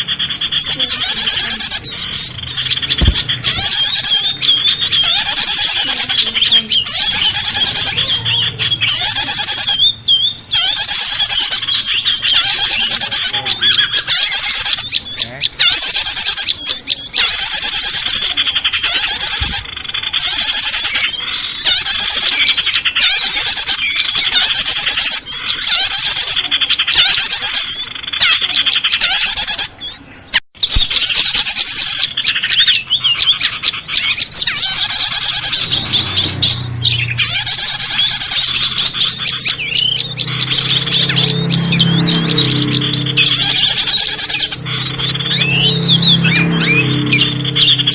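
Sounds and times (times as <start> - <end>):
small birds chirping: 0.0 - 47.9.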